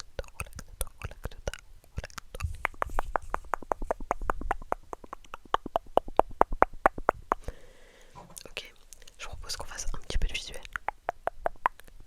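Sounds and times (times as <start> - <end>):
wet mouth clicks and pops: 0.0 - 7.5, 8.4 - 12.0.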